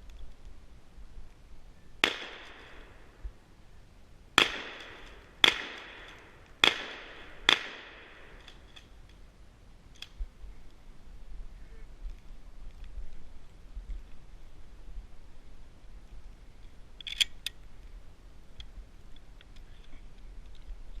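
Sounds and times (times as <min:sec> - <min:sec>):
shotgun shots echoing: 0:02.0 - 0:03.0, 0:04.4 - 0:08.4.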